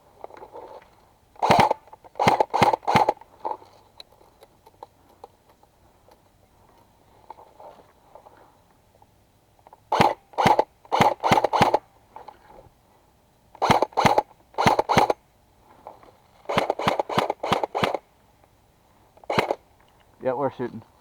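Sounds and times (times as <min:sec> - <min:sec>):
airsoft gun shots: 0:01.4 - 0:03.2, 0:09.9 - 0:11.8, 0:13.6 - 0:15.2, 0:16.5 - 0:18.0, 0:19.3 - 0:19.6.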